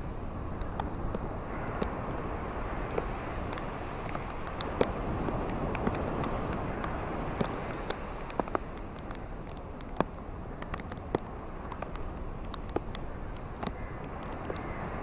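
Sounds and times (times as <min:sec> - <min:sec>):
steady rain falling: 0:00.0 - 0:15.0
raindrops tapping: 0:02.9 - 0:14.6.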